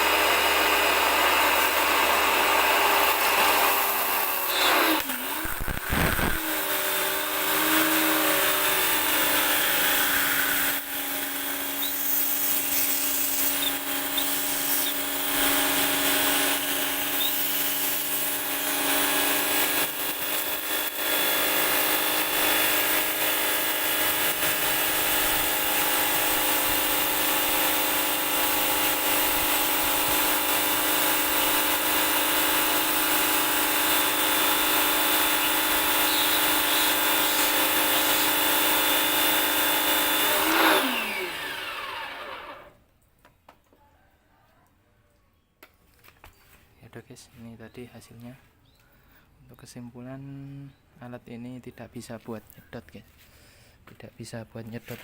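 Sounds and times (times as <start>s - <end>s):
pressure washer motor whining: 0.0s - 42.8s
water jet spraying: 11.8s - 15.0s.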